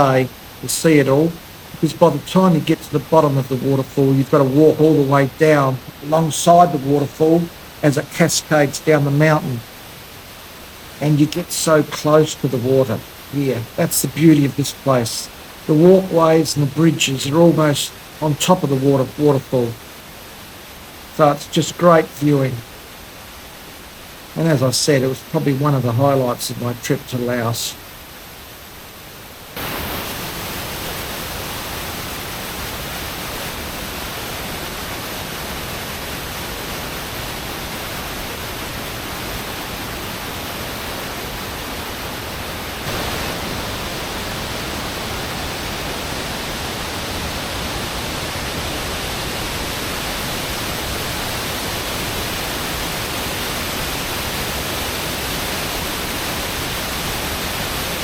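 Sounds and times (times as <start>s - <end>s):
waterfall crashing: 0.0s - 29.0s, 29.6s - 58.0s.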